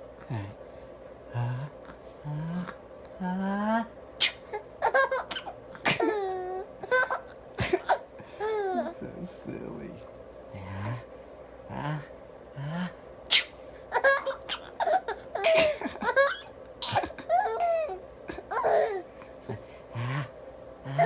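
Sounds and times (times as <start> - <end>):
man pretend sneezing: 4.2 - 4.5, 13.3 - 13.6
baby giggling: 4.5 - 8.9, 13.9 - 19.0.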